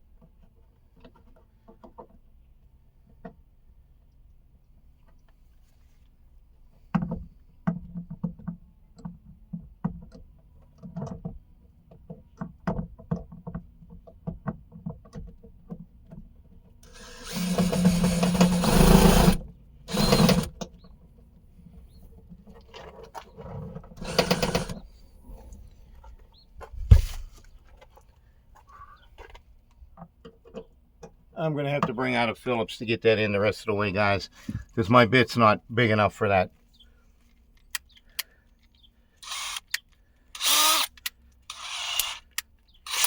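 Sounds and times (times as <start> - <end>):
power screwdriver driving screw: 16.8 - 20.6, 24.0 - 24.8, 39.2 - 43.0.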